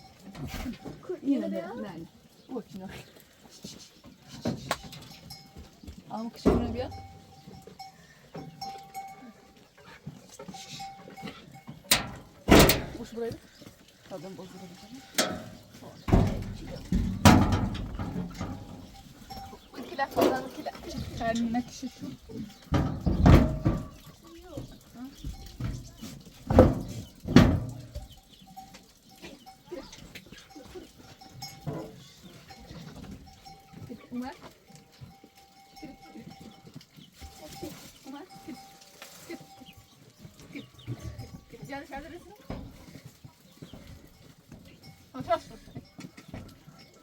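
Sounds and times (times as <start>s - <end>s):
herd bells ringing: 5.0s - 5.8s, 6.4s - 9.7s, 10.5s - 13.2s, 17.9s - 22.7s, 28.1s - 41.9s.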